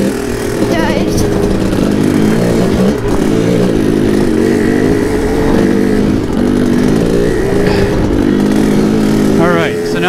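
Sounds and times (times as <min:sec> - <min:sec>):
dirt bike engine running: 0:00.0 - 0:10.0.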